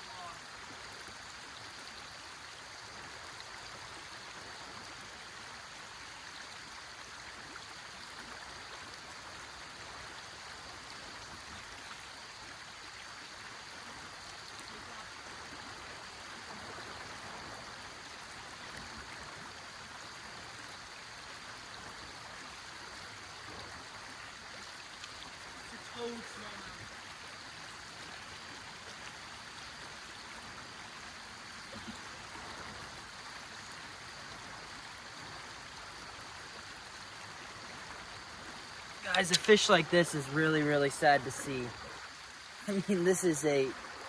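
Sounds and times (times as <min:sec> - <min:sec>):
river water rushing: 0:23.7 - 0:44.0.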